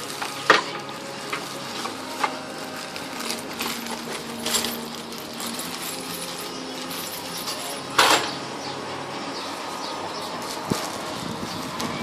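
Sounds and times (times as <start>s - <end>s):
metal grill parts clinking: 0.2s - 8.4s.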